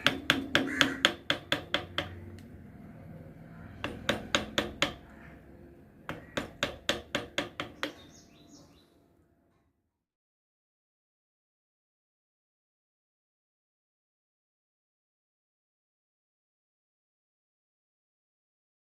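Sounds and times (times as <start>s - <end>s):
mallet tapping a chisel: 0.0s - 2.4s, 3.8s - 5.1s, 6.0s - 8.2s.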